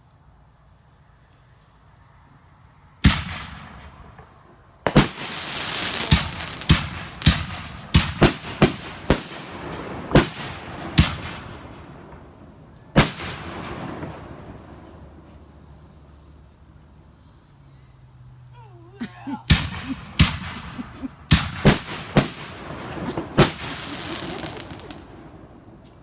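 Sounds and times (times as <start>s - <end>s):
fireworks hissing crackle: 0.0s - 18.4s, 19.4s - 26.0s
fireworks bangs: 3.0s - 16.6s, 19.4s - 26.0s.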